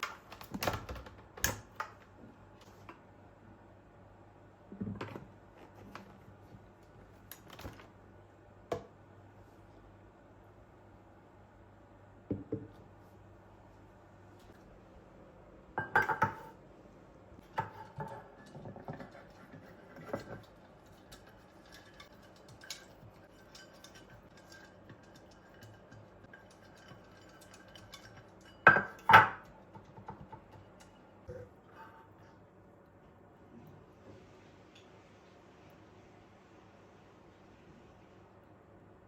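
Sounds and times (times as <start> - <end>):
dishes and utensils clinking: 15.8 - 16.5, 17.5 - 32.1.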